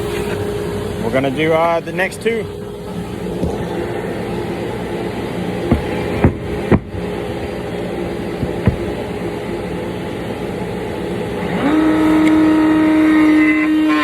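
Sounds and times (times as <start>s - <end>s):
machine hum: 0.0s - 14.0s
router motor whine: 11.3s - 14.0s.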